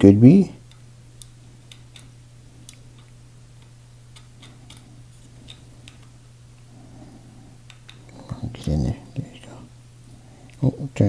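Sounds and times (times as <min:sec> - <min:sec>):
steady low hum: 0:00.0 - 0:11.0
metal knife parts clicking: 0:00.6 - 0:06.2.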